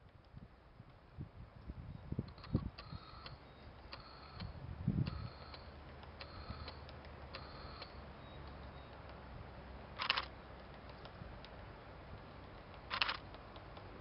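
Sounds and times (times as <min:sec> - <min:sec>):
light ringing ticks: 0:02.4 - 0:09.2.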